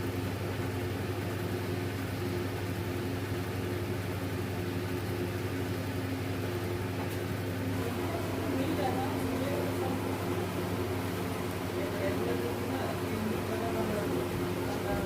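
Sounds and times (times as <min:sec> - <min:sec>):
low mechanical hum: 0:00.0 - 0:15.0.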